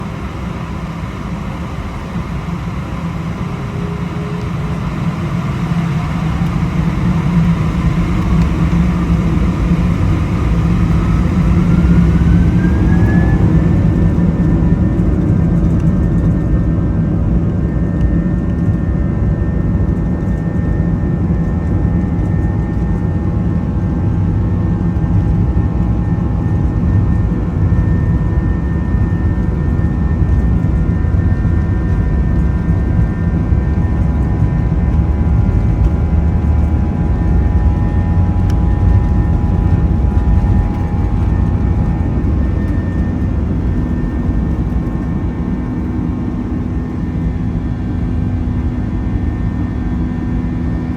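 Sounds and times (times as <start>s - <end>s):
jet engines spooling up: 0.0s - 15.8s, 34.2s - 48.2s
heavy low rumble: 0.0s - 19.2s, 21.2s - 50.9s.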